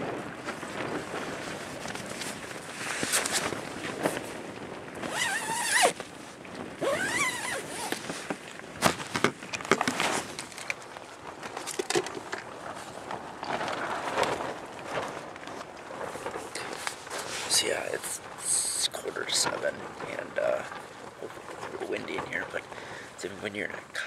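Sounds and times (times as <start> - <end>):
tent fabric rustling and snapping: 0.4 - 4.4, 5.0 - 6.2, 6.8 - 17.6.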